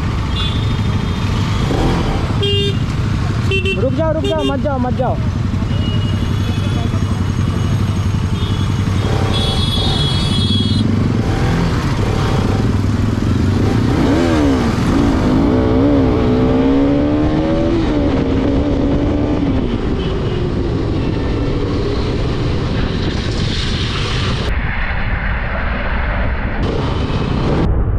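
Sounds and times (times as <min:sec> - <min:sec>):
motorcycle engines running: 0:00.0 - 0:23.2
motorcycle engine revving: 0:00.0 - 0:23.5.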